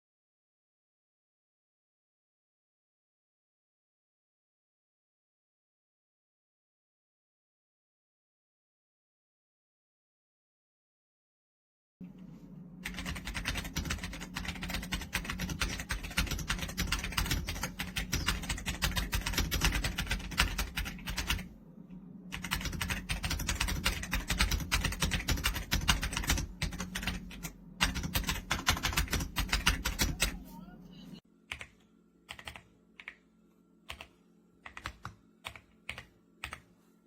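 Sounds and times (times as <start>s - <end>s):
mechanical keyboard typing: 12.8s - 21.5s, 22.3s - 30.4s, 31.5s - 33.2s, 33.9s - 36.7s.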